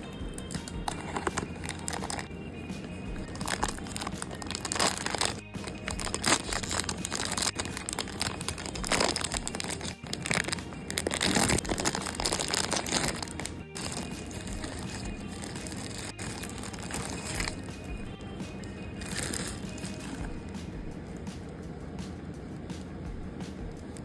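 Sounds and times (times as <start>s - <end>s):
packaging torn and crinkled: 0.9s - 2.3s, 3.4s - 17.6s, 19.0s - 20.2s.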